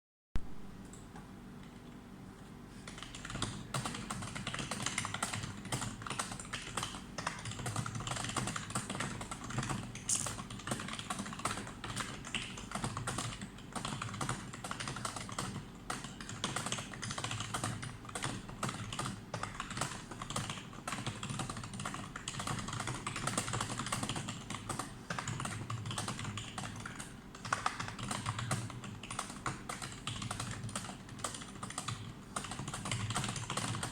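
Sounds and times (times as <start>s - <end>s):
typing on keyboard: 2.9s - 33.9s.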